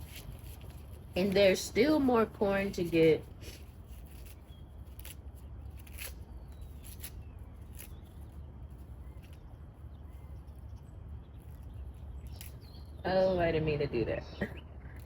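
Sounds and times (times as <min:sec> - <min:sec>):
corn husks crackling: 0:00.0 - 0:13.4
steady low hum: 0:00.0 - 0:15.0
faint bird chirps: 0:05.5 - 0:13.4.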